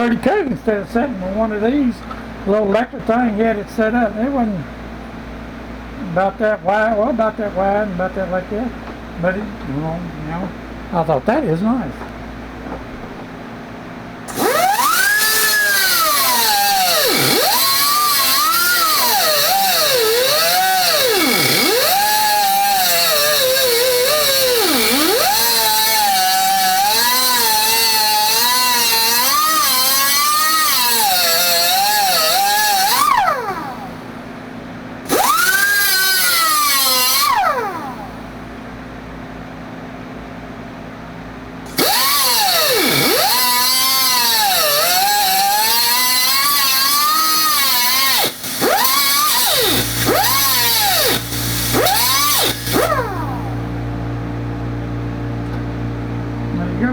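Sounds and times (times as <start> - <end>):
power tool motor whine: 14.2 - 34.2, 35.0 - 38.3, 41.7 - 56.5.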